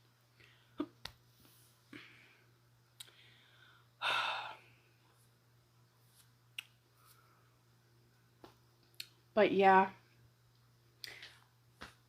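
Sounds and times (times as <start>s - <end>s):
breathy sigh: 3.1s - 4.8s.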